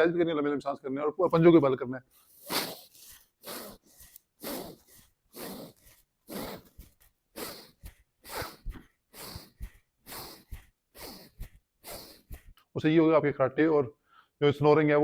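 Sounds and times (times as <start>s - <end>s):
man breathing forcefully: 2.2s - 12.7s
soft low thumps: 7.7s - 12.6s.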